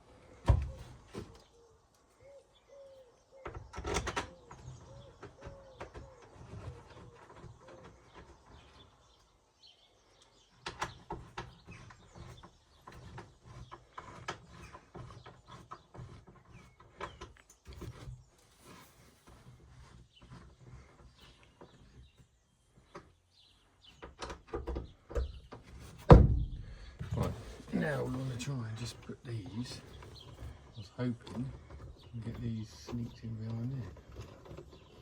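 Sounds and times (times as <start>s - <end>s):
bird calling: 0.4s - 10.5s
knocks and clicks on interior trim: 24.0s - 27.3s.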